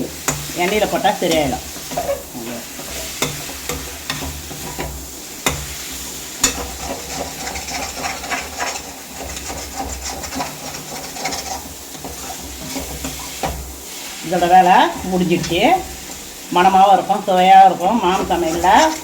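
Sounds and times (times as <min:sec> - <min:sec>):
food sizzling in oil: 0:00.0 - 0:19.0
spoon scraping a frying pan: 0:00.0 - 0:19.0
sharp knocks on a pan: 0:02.8 - 0:13.7.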